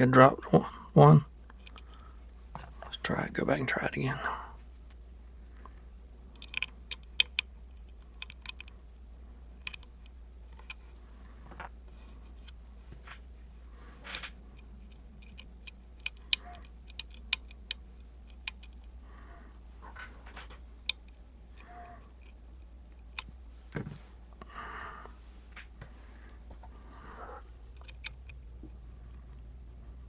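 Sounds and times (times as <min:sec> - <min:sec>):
lock pick clicking on pins: 0:14.1 - 0:18.9.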